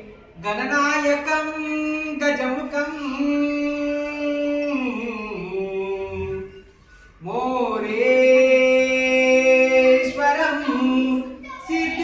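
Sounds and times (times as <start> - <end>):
man singing long notes: 0.0 - 6.6.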